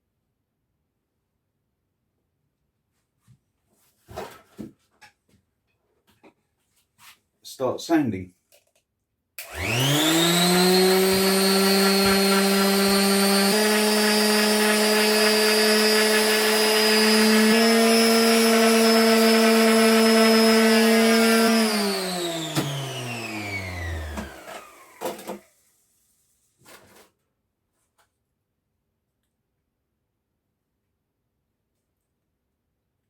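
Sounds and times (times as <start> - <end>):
electric sander on wood: 9.4 - 25.6.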